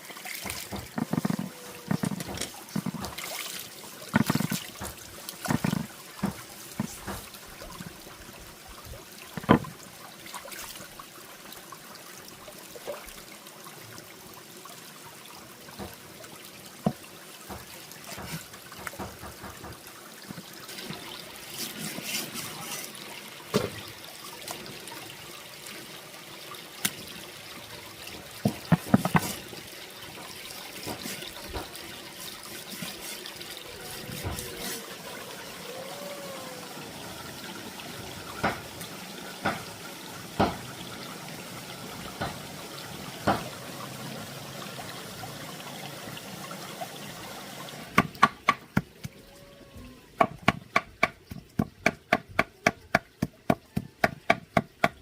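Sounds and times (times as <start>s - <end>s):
water trickling and splashing: 0.0s - 55.0s
sharp knocks: 9.4s - 9.7s.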